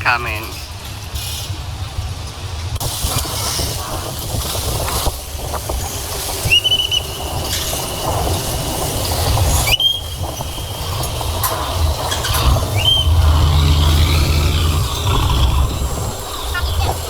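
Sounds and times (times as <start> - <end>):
boat engine rumble: 10.3 - 17.0.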